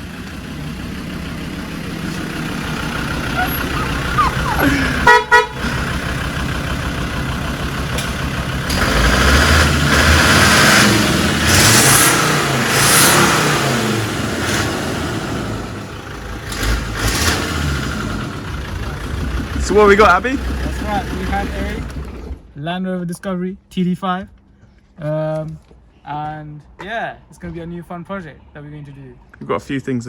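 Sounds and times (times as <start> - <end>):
diesel engine running: 0.0 - 22.6
car horn toot: 3.3 - 5.9.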